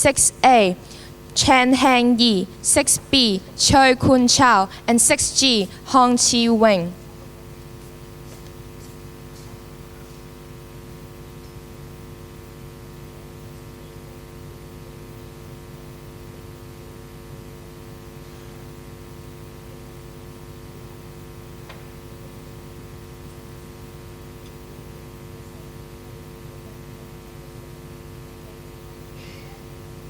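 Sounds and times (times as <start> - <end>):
electrical mains hum: 0.0 - 30.0.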